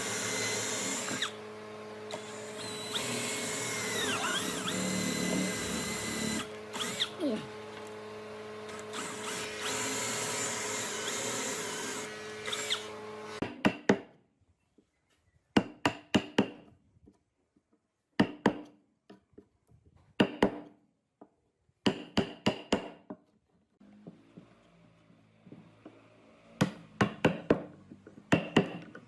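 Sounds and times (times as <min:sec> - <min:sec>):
power tool running: 0:00.0 - 0:13.4.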